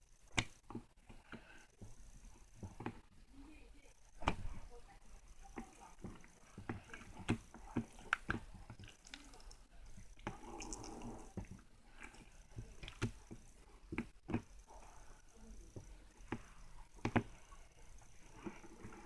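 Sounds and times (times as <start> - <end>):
slime squishing: 5.4 - 19.0.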